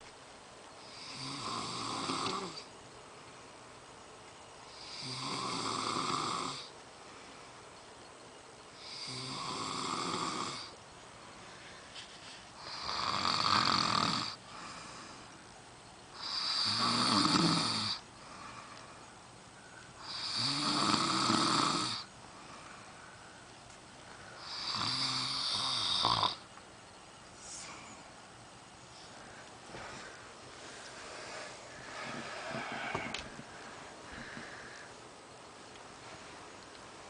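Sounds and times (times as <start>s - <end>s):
man snoring: 0.8s - 2.7s, 4.7s - 6.7s, 8.8s - 10.7s, 12.6s - 14.8s, 16.2s - 18.0s, 20.0s - 22.1s, 24.4s - 26.4s.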